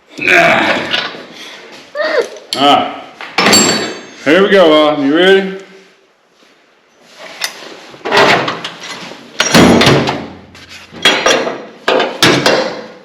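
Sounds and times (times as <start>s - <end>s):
hard parts clunking and rattling: 3.2s - 4.2s, 7.4s - 13.0s.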